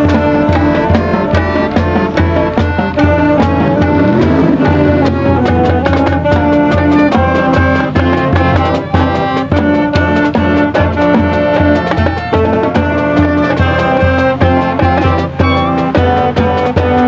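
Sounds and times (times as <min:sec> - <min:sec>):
brass playing: 0:00.0 - 0:17.0
steady drum beat: 0:00.0 - 0:17.0.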